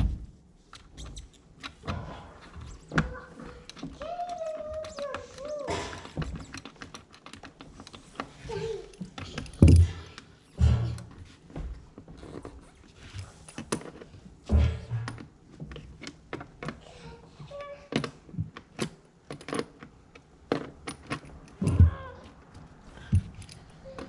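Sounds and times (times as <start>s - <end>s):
heavy thunk: 10.6s - 11.7s, 14.5s - 15.3s
clicks and knocks on hardware: 13.6s - 16.8s.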